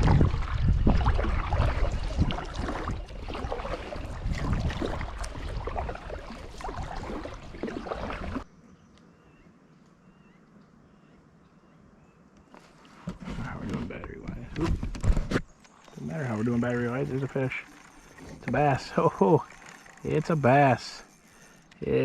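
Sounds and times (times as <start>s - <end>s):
water sloshing: 0.0s - 8.5s, 15.6s - 21.7s.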